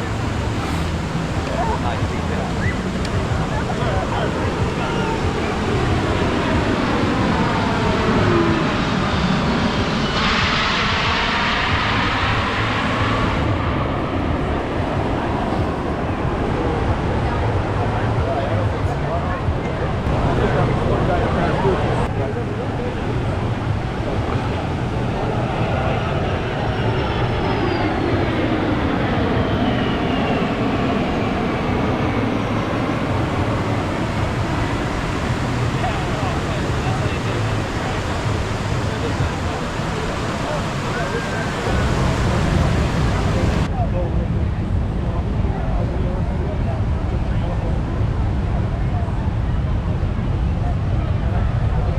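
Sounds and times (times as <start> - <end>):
jet airplane flying past: 0.0 - 51.9.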